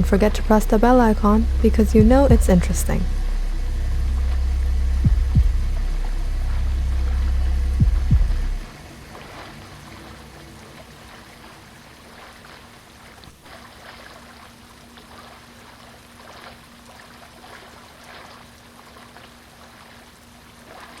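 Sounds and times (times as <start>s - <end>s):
deep low rumble: 0.0s - 12.3s
faint steady hum: 0.0s - 21.0s
trickling water: 0.0s - 21.0s.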